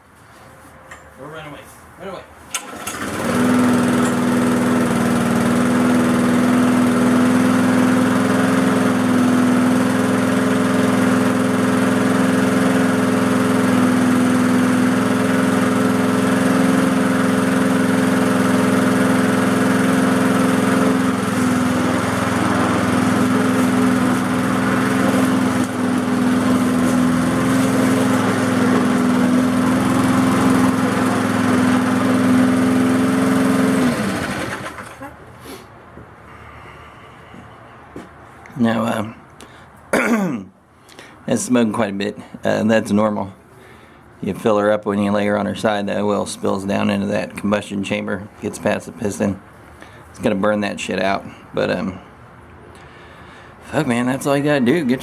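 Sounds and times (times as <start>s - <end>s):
lawn mower engine running: 2.5s - 35.6s.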